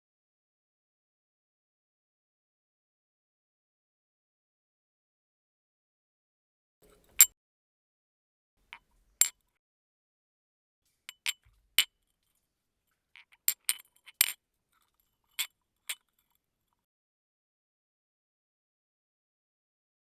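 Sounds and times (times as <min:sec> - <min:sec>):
glasses clinking: 0:11.1 - 0:11.6.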